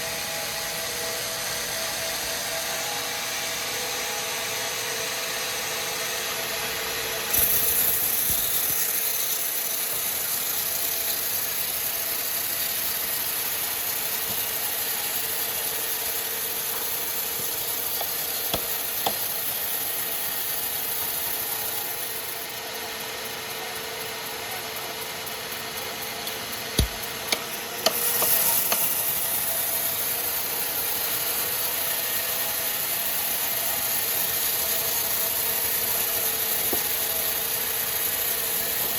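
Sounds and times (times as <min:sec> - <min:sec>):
high hiss of sawing: 0:00.0 - 0:22.4, 0:26.8 - 0:38.9
sawmill machinery humming: 0:00.0 - 0:38.9
sharp knocks: 0:26.8 - 0:28.0.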